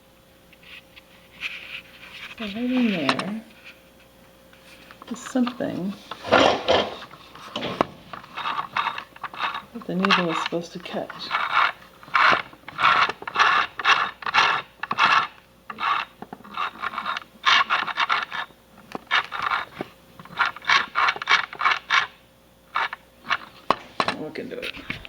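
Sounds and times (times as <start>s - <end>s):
scraping on plastic: 4.6s - 25.0s.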